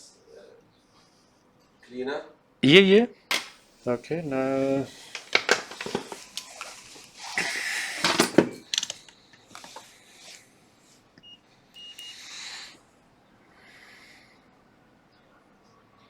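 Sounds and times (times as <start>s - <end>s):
tool handling clicks and hisses: 3.3s - 10.4s
multimeter continuity beeps: 11.2s - 12.2s.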